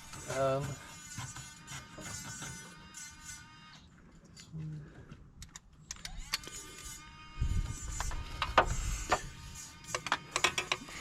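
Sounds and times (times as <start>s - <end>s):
sharp clicks and knocks: 9.9s - 10.9s.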